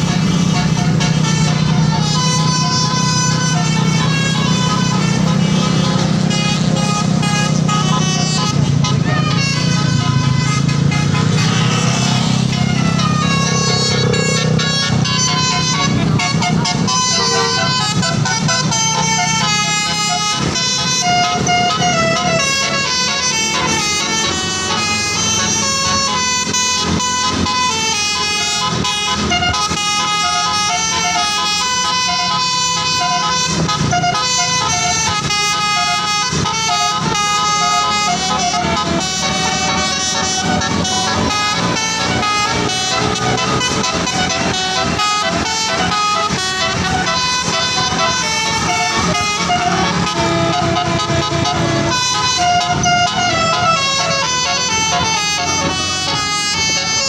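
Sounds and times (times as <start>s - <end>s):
multi-tone air horns melody: 0.0s - 57.0s.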